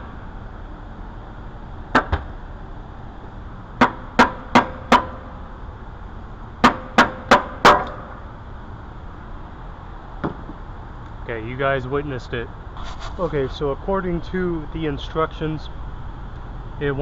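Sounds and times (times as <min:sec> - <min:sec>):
sharp knocks on metal: 0:01.9 - 0:02.3, 0:03.8 - 0:05.3, 0:06.6 - 0:08.2, 0:10.2 - 0:10.6.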